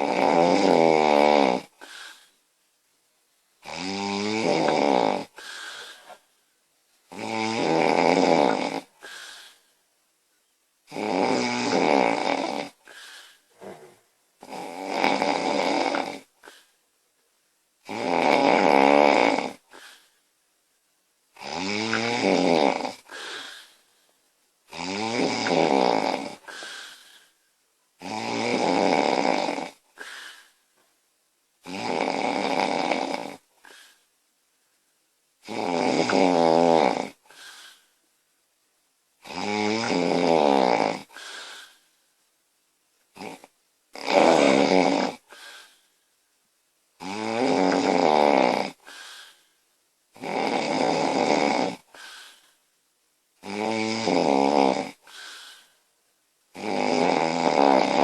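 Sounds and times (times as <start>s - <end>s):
woman snoring loudly: 0.0s - 2.2s, 3.6s - 6.0s, 7.1s - 9.6s, 10.9s - 16.6s, 17.8s - 20.0s, 21.4s - 23.7s, 24.7s - 27.1s, 28.0s - 30.1s, 31.6s - 33.8s, 35.4s - 37.4s, 39.2s - 41.8s, 43.2s - 45.7s, 47.0s - 49.3s, 50.2s - 52.2s, 53.4s - 55.3s, 56.5s - 58.0s.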